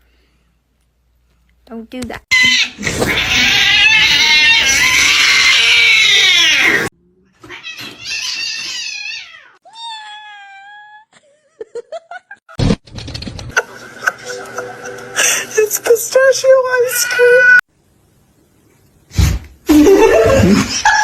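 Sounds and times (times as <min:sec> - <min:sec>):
cat yowling: 0:02.3 - 0:11.1.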